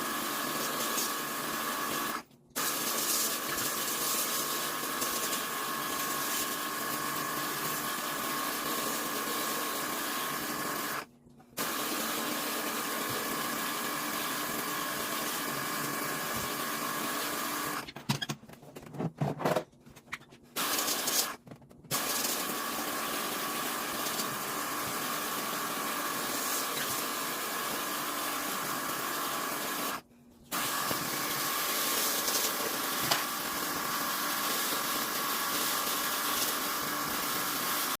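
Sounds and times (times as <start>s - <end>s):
pressure washer spraying: 2.6s - 6.6s, 20.6s - 22.7s, 24.0s - 24.3s, 26.2s - 27.1s, 30.5s - 38.0s.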